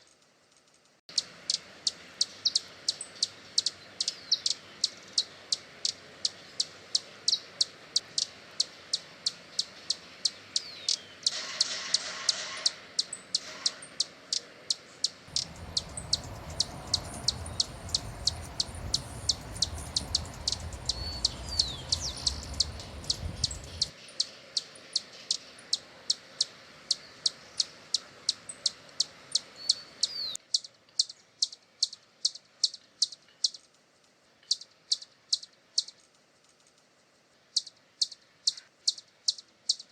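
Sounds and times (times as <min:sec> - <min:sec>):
hummingbird chipping: 0:15.3 - 0:23.9
low rumble: 0:15.3 - 0:23.9.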